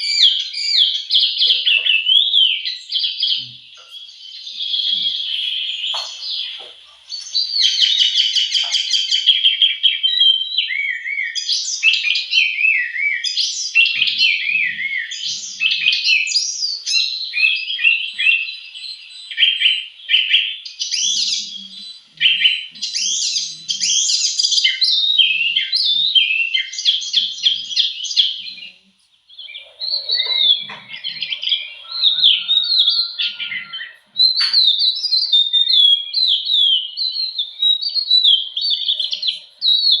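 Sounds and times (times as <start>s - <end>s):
small birds chirping: 0.0s - 40.0s.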